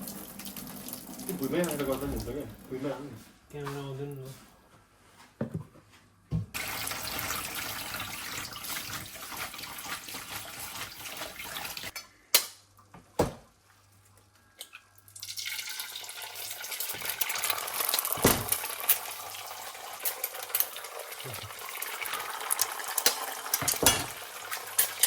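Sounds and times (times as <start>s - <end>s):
water running from tap: 0.0s - 2.7s, 6.6s - 11.9s, 15.2s - 25.0s
dishes clinking: 23.0s - 25.0s.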